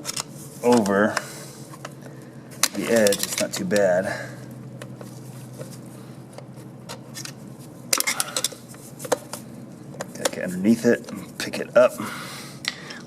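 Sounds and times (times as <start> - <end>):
faint steady hum: 0.0 - 13.0
screwdrivers clicking and scraping metal: 2.6 - 4.0, 6.4 - 9.4.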